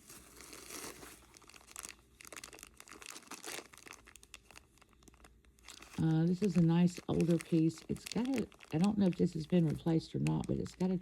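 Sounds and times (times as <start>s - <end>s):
plastic bags crinkling: 0.0s - 11.0s.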